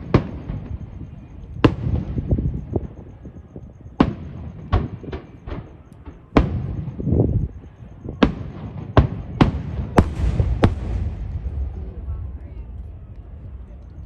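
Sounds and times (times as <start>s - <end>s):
fireworks bangs: 3.9s - 14.0s
low rumbling and crackle: 9.4s - 14.0s.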